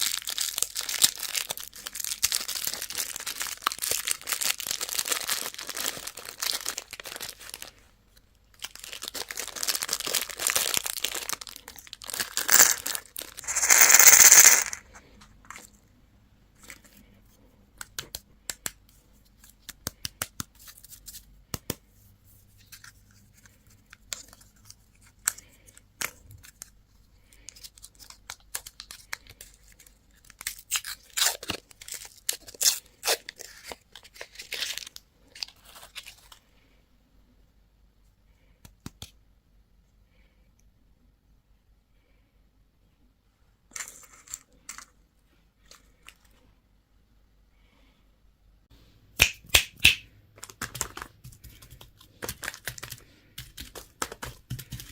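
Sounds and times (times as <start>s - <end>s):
candy wrappers crinkling and tearing: 0.0s - 15.7s, 23.9s - 36.4s, 49.2s - 54.9s.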